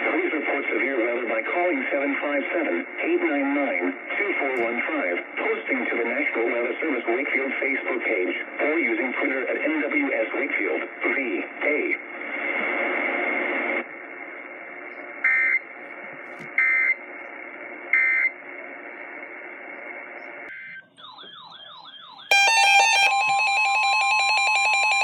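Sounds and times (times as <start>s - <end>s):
radio hiss: 0.0s - 20.5s
loud buzzy electronic alert: 22.3s - 25.0s.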